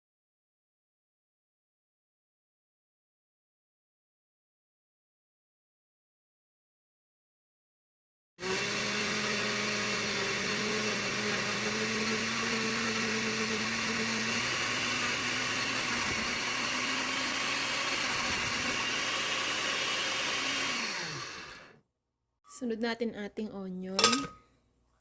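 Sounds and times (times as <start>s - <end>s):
electric blender running: 8.4s - 21.8s.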